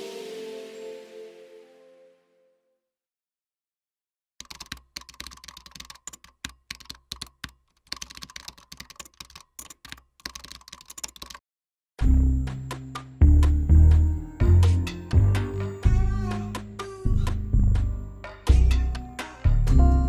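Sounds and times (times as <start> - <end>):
background music: 0.0 - 2.6, 12.0 - 20.0.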